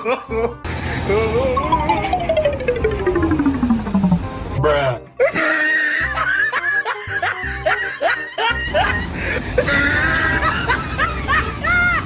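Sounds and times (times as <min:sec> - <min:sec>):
background music: 0:01.4 - 0:05.6.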